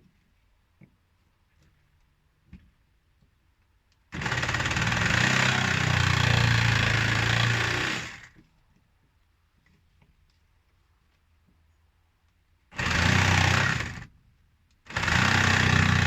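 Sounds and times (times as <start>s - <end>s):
electric power tool cutting: 4.2s - 8.3s, 12.8s - 14.1s, 14.9s - 16.0s.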